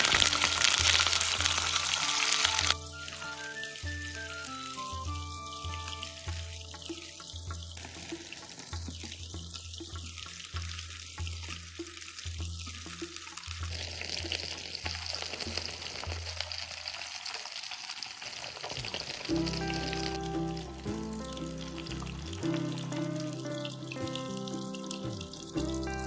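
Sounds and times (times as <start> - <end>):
fish sizzling in hot oil: 0.0 - 26.0
background music with pulsing bass: 19.3 - 26.0.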